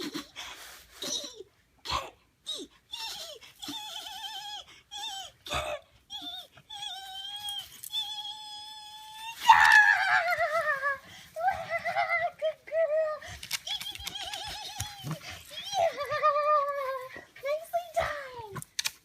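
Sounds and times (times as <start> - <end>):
person making whining squeaks: 0.0 - 1.5, 2.5 - 18.8
person squealing like a whinny: 3.0 - 5.5, 6.1 - 17.1.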